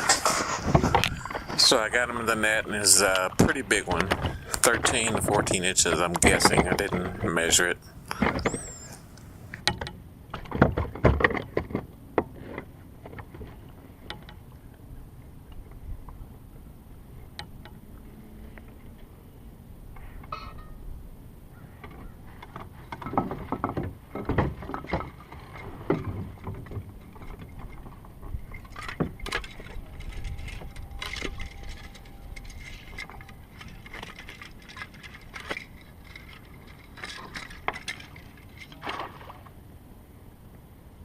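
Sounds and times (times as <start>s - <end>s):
items bumping kayak hull: 0.0s - 9.7s
fishing gear knocking and rattling: 27.2s - 38.8s.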